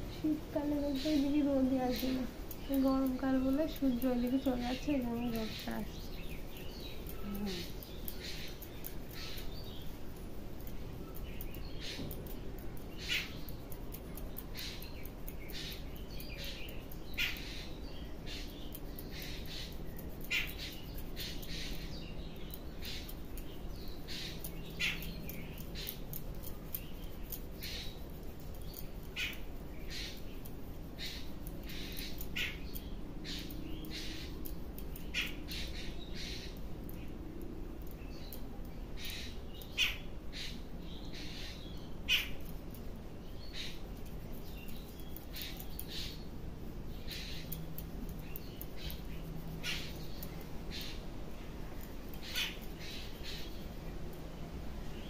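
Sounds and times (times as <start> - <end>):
birds squawking: 0.0 - 10.2, 14.4 - 26.6, 27.6 - 37.1, 39.0 - 42.7, 46.9 - 51.1, 51.8 - 53.7.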